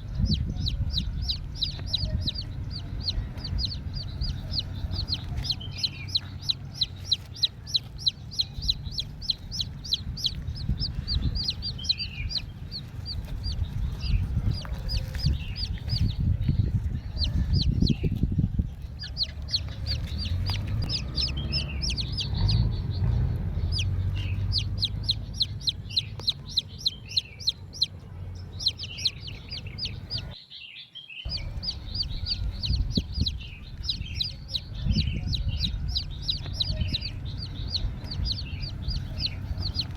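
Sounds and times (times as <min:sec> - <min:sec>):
low rumble: 0:00.0 - 0:30.4, 0:31.3 - 0:39.9
birds chirping: 0:00.0 - 0:39.9.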